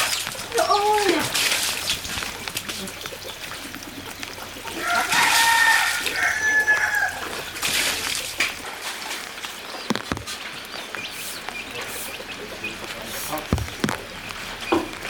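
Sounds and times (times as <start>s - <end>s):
rooster crowing: 4.7s - 7.6s.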